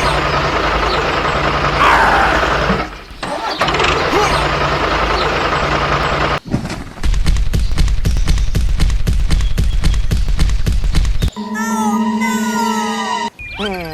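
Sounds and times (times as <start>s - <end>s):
vehicle engine running: 0.0s - 6.4s.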